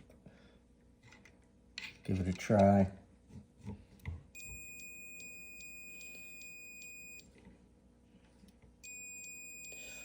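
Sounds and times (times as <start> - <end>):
continuity tester beeping: 4.4 - 7.3, 8.8 - 10.0.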